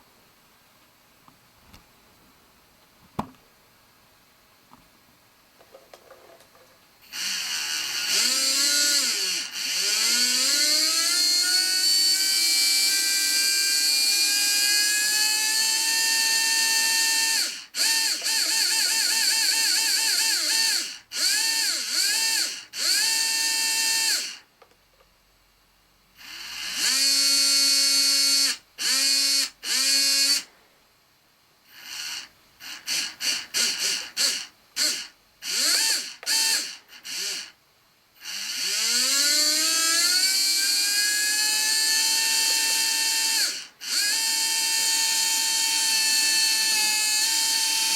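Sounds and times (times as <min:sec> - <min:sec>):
electric motor whining: 0:07.1 - 0:24.3, 0:26.2 - 0:30.5, 0:31.8 - 0:37.5.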